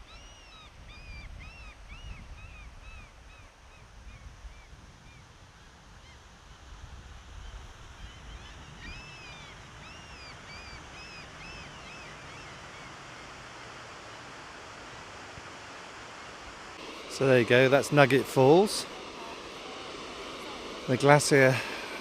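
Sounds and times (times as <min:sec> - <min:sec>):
waterfall roaring: 0:12.1 - 0:22.0.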